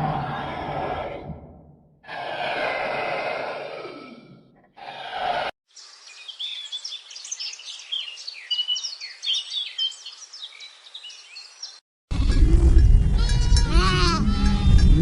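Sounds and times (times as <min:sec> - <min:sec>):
small birds chirping and twittering: 0:05.7 - 0:11.8
farm animal bleating: 0:12.1 - 0:15.0.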